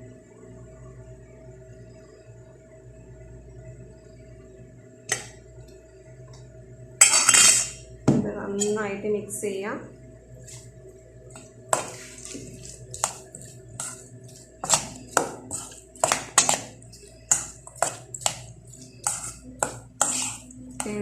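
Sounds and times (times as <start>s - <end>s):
spoon clinking against a bowl: 14.6s - 21.0s.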